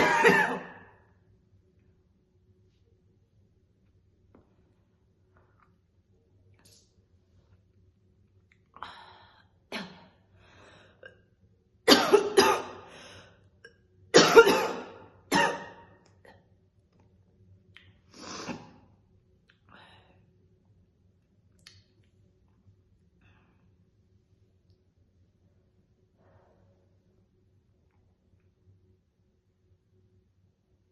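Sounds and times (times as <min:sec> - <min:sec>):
woman coughing: 0:00.0 - 0:00.9, 0:11.9 - 0:12.9, 0:14.2 - 0:15.9.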